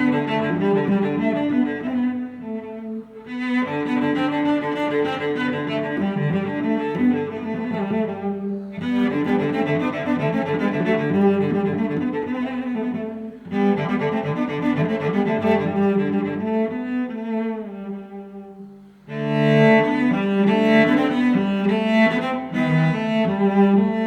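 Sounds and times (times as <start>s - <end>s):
low bowed strings music: 0.0s - 24.0s.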